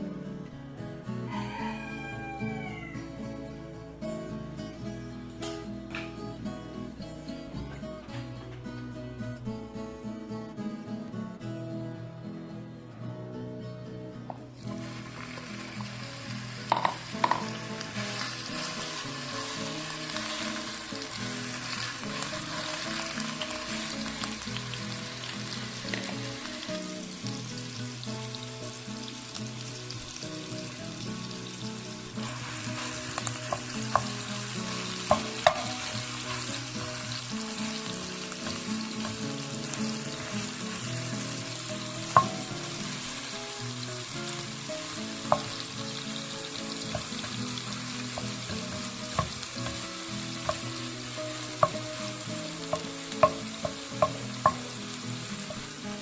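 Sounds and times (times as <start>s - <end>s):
soft guitar music: 0.0s - 56.0s
food sizzling in a pan: 1.3s - 3.7s, 14.5s - 56.0s.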